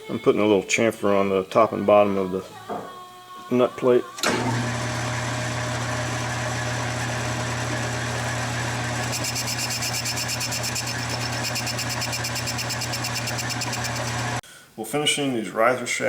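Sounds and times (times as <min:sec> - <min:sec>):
lathe motor hum: 0:04.3 - 0:14.4
fast high-pitched ticking: 0:09.1 - 0:14.2.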